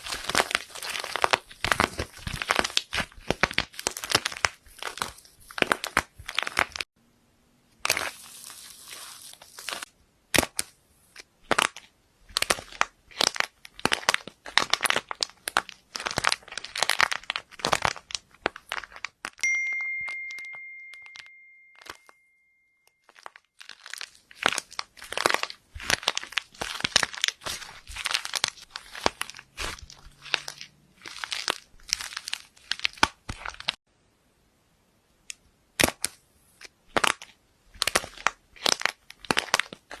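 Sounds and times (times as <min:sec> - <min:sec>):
slime crackling and popping: 0:00.0 - 0:06.9, 0:07.8 - 0:19.4, 0:23.0 - 0:33.8, 0:35.7 - 0:40.0
clear ringing tone: 0:19.4 - 0:23.1.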